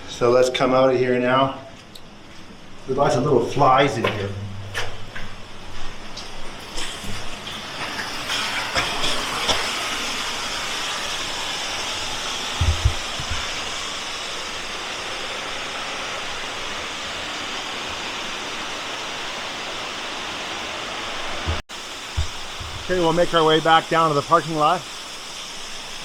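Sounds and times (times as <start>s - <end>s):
creek water rushing: 7.6s - 26.0s
low thumps: 12.6s - 13.5s.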